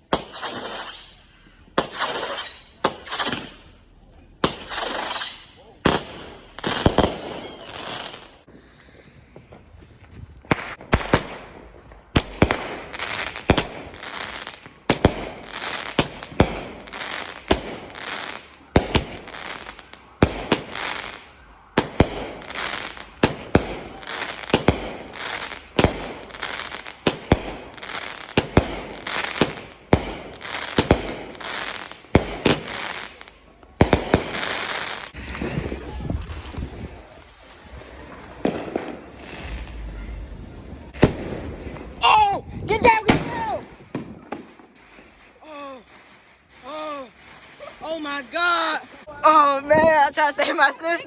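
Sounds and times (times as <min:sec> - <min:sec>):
fireworks bangs: 0:00.0 - 0:03.8, 0:04.4 - 0:51.0.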